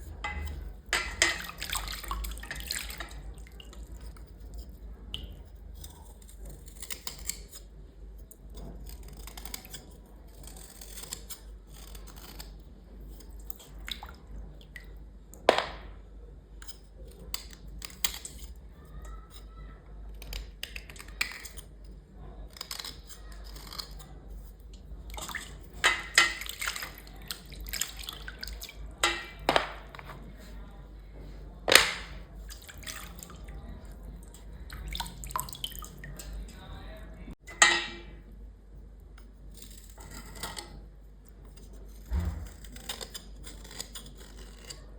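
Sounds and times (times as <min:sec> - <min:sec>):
scraping and rubbing: 0:00.0 - 0:03.3, 0:20.3 - 0:35.2, 0:39.5 - 0:44.9
water dripping: 0:00.2 - 0:04.1, 0:31.8 - 0:36.6.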